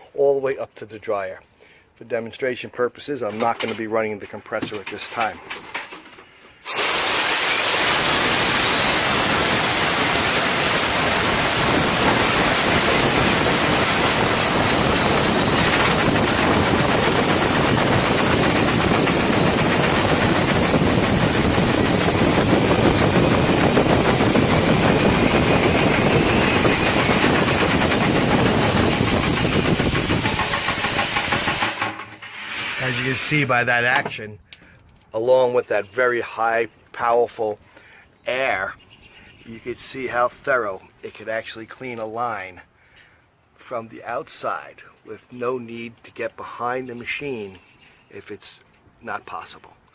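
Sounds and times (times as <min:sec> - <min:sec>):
compressed air jet rushing: 0:06.6 - 0:33.7.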